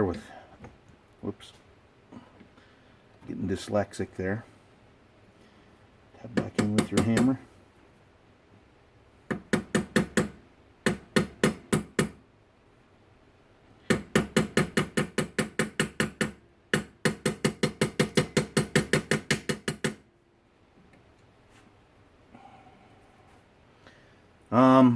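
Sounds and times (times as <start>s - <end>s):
hammer tapping on metal: 6.4s - 7.4s, 9.3s - 12.2s, 13.9s - 20.1s.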